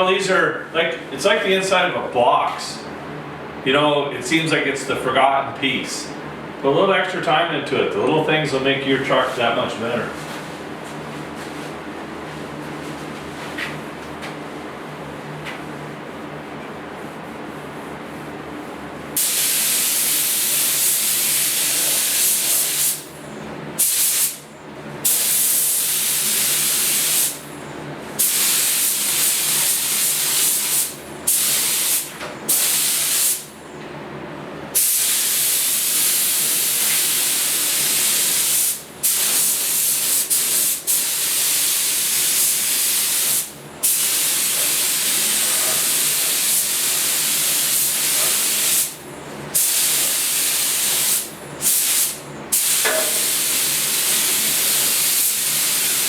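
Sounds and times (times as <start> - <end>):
spray gun hissing: 19.2 - 23.0, 34.8 - 48.9, 49.6 - 56.0.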